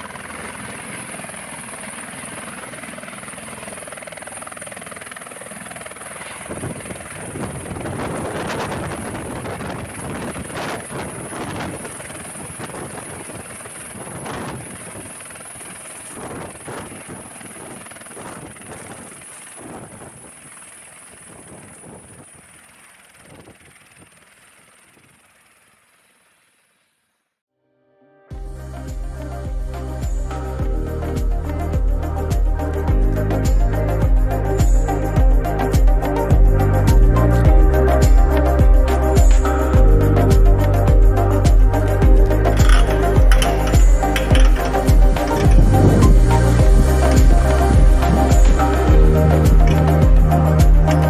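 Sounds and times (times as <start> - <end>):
helicopter rotor pulsing: 0.0 - 26.9, 40.7 - 51.0
helicopter turbine whine: 0.0 - 27.0, 38.4 - 51.0.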